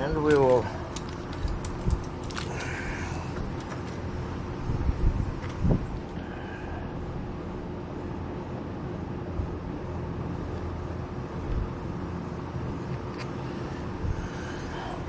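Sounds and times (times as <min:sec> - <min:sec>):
faint hum: 0:00.0 - 0:15.0
low background rumble: 0:00.0 - 0:15.0.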